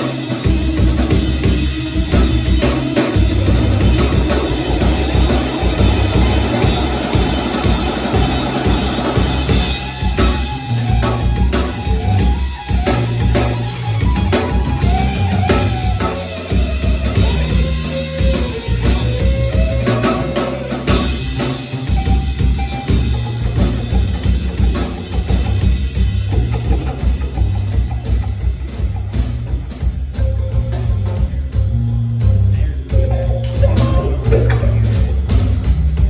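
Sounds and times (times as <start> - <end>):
bass line: 0.0 - 36.0
drum kit beat: 0.0 - 36.0
wavering melodic line: 32.9 - 35.4.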